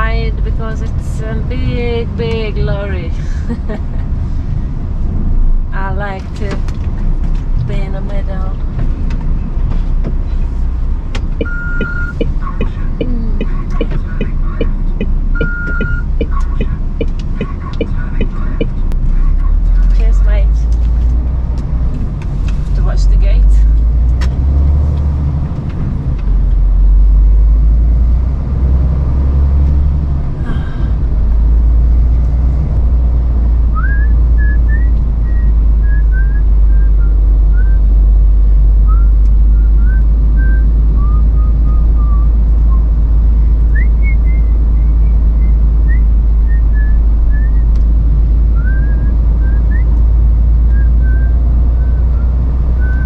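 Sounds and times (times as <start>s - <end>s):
diesel engine droning: 0.0s - 53.0s
person whistling a tune: 11.4s - 12.1s, 15.4s - 16.1s, 33.8s - 37.9s, 38.9s - 42.8s, 48.6s - 50.0s, 50.7s - 53.0s.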